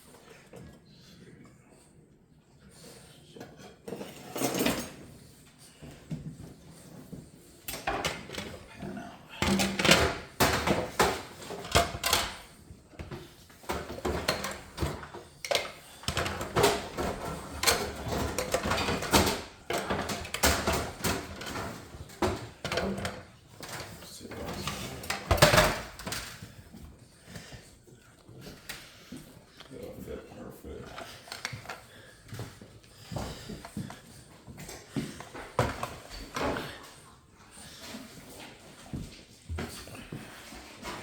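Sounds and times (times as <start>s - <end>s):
knocks and clatter: 9.4s - 26.5s.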